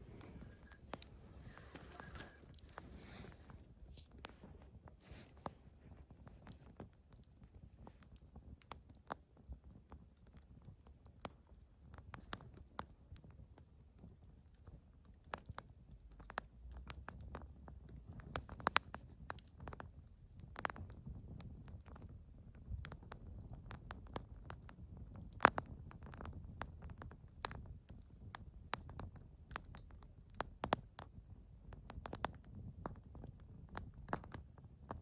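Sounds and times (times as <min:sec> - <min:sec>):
low rumble of flames: 0:00.0 - 0:07.4, 0:15.5 - 0:35.0
wood fire crackling and popping: 0:00.0 - 0:35.0.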